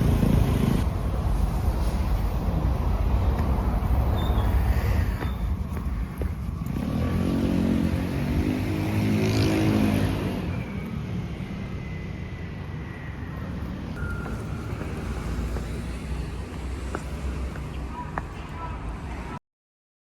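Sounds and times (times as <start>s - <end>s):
traffic noise: 0.0s - 19.4s
vehicle engine passing by: 6.5s - 10.8s.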